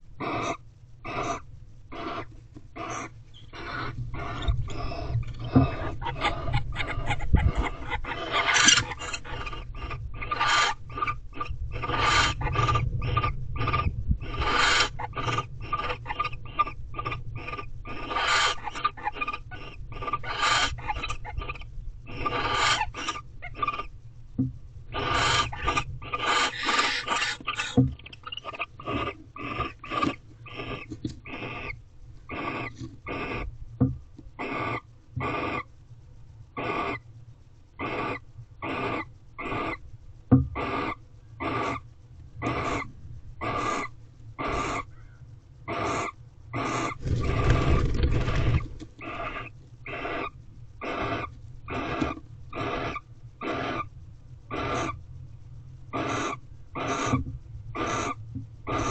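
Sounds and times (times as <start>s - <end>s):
owls screeching: 0.2s - 24.0s, 24.9s - 33.5s, 34.4s - 35.7s, 36.6s - 37.0s, 37.8s - 39.8s, 40.6s - 53.9s, 54.5s - 55.0s, 55.9s - 58.9s
low rumble: 2.7s - 8.2s, 8.8s - 18.7s.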